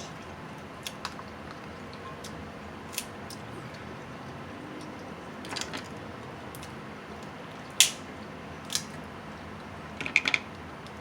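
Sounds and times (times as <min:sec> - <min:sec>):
crab shell cracking: 0:07.8 - 0:08.1, 0:08.7 - 0:09.0.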